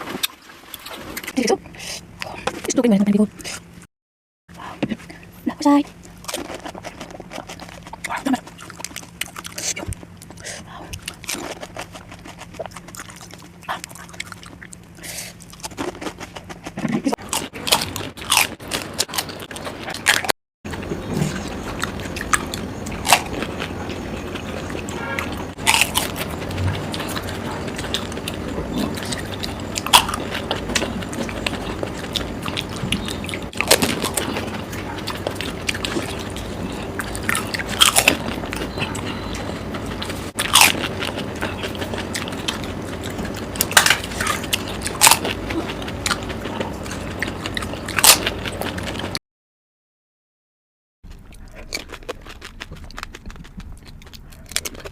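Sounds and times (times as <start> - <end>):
chewing: 5.9 - 49.2, 51.1 - 54.9
crisp shells crunching: 51.1 - 54.9.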